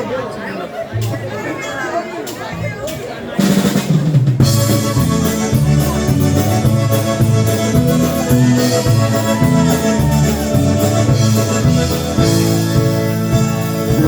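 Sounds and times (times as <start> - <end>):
live band playing: 2.8 - 14.0
rhythmic bass line: 3.4 - 14.0.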